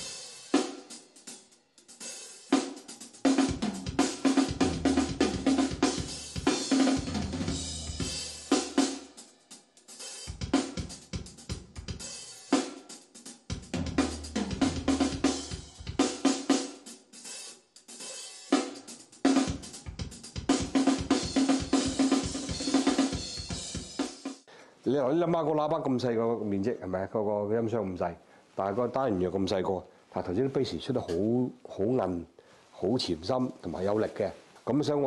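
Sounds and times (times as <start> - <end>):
drum kit through speakers: 0.0 - 24.5.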